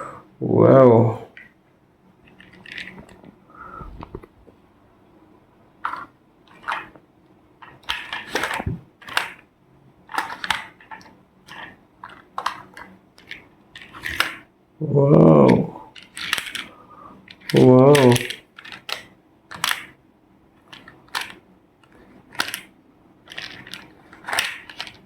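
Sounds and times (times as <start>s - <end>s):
plastic toys clicking and rustling: 2.2s - 3.3s, 5.8s - 7.0s, 7.6s - 14.5s, 15.4s - 20.0s, 20.6s - 25.0s.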